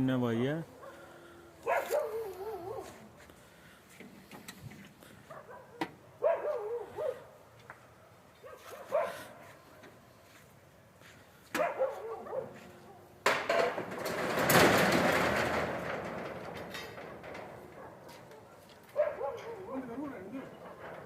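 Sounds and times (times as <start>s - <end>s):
dog barking: 0.8s - 3.0s, 5.3s - 7.3s, 8.4s - 9.5s, 11.6s - 13.1s, 17.8s - 20.0s.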